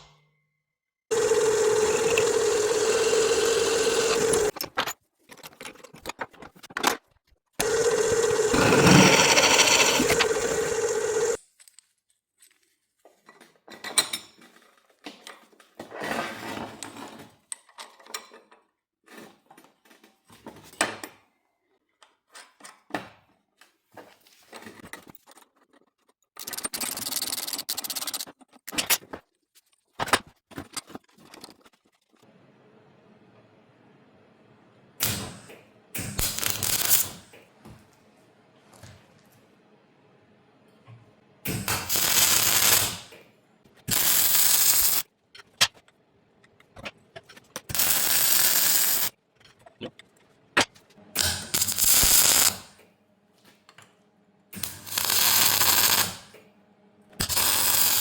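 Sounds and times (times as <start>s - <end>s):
power tool motor running: 1.1s - 4.5s, 7.6s - 11.4s, 54.6s - 56.2s, 57.2s - 58.0s.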